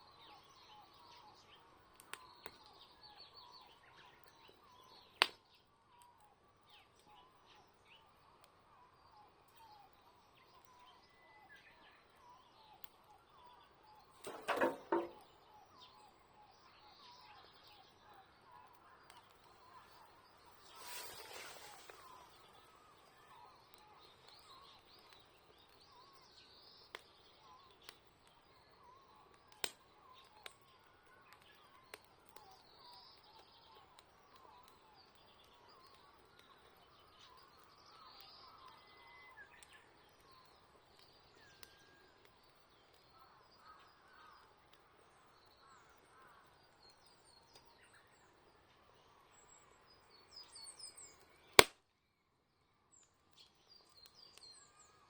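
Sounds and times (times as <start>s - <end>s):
crackling campfire: 0.0s - 55.0s
small birds chirping: 0.0s - 55.0s
sharp pops from fire: 1.8s - 6.2s, 12.2s - 15.4s, 18.5s - 45.6s, 50.4s - 51.9s.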